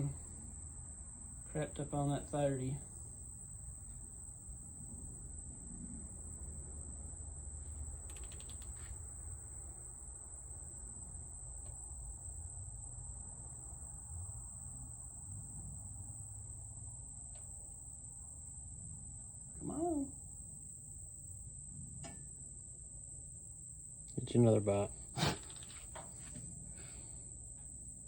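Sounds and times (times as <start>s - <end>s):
cricket trill: 0.0s - 28.0s
low background hum: 0.0s - 28.0s
light clicks: 8.0s - 9.0s.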